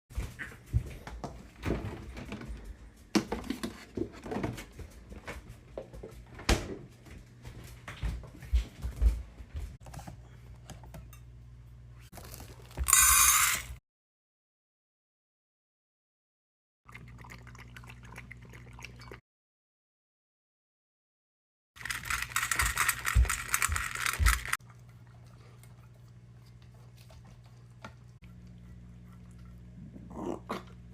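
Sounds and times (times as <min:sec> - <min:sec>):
dog eating clicks and knocks: 0:21.8 - 0:24.6
dry kibble rattling in bowl: 0:21.8 - 0:24.6
low steady hum: 0:22.0 - 0:30.9.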